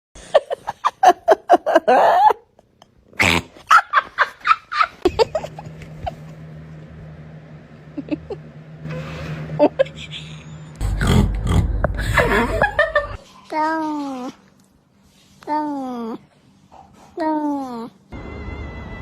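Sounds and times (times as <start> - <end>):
steady low hum: 5.0 - 13.2.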